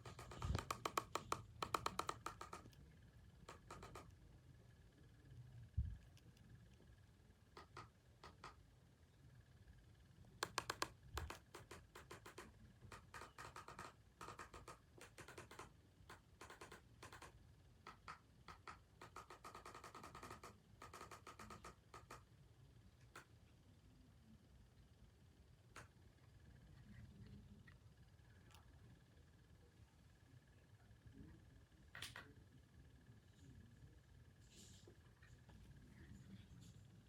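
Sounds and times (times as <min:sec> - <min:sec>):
faint clicking and tapping: 0:00.0 - 0:04.4, 0:05.7 - 0:08.7, 0:10.4 - 0:22.3, 0:23.0 - 0:23.7, 0:25.7 - 0:32.6.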